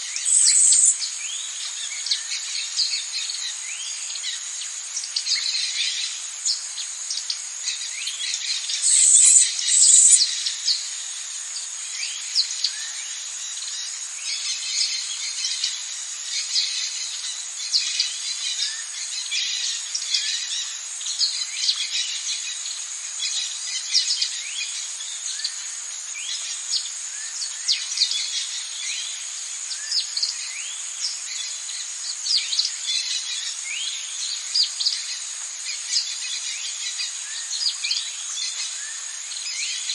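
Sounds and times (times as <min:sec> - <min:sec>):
high-pitched insect drone: 0:00.0 - 0:39.9
birds chirping: 0:00.2 - 0:01.0, 0:08.2 - 0:10.4.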